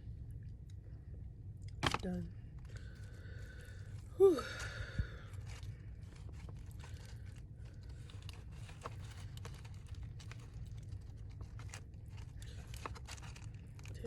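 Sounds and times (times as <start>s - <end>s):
chewing crunchy food: 5.2s - 14.0s.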